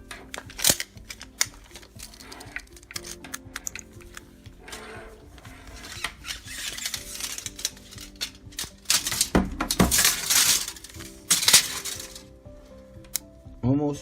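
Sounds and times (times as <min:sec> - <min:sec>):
cable rustling: 0:00.0 - 0:13.4.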